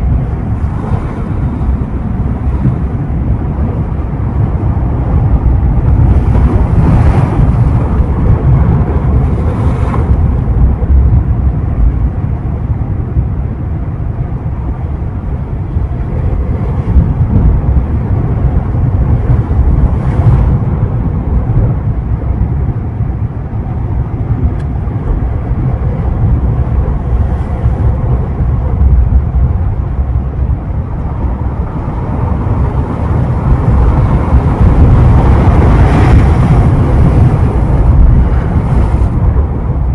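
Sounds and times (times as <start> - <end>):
hissing surf washes: 0.0 - 10.7, 23.5 - 39.9
sea waves at shore: 0.0 - 39.9
wind buffeting microphone: 0.0 - 39.9.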